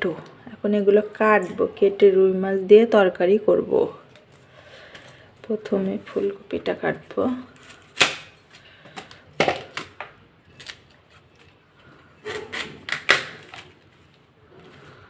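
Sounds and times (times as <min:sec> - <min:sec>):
knife cutting cauliflower: 0:12.2 - 0:13.6.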